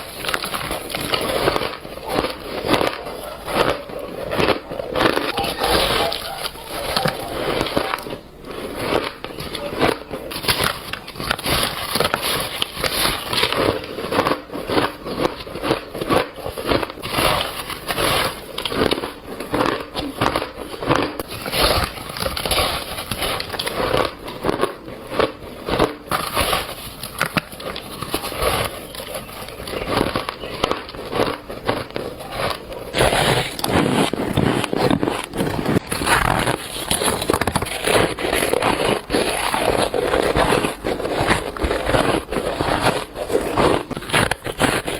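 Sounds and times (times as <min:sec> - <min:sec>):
chewing shaved ice: 0:00.0 - 0:44.9.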